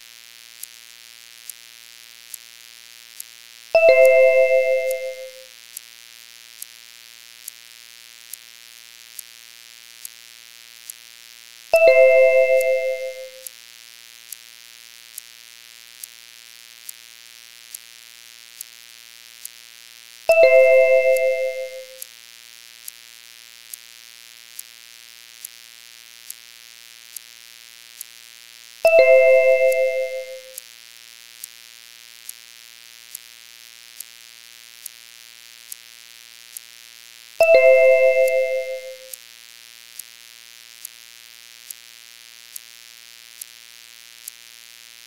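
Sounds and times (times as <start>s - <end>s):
bell-like chime: 3.8s - 5.5s, 11.8s - 13.4s, 20.3s - 22.0s, 28.9s - 30.6s, 37.4s - 39.1s.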